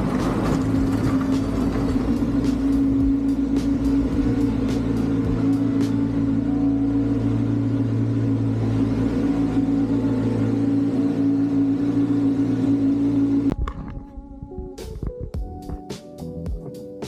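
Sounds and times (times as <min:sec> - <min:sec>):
guitar music: 0:00.0 - 0:17.0.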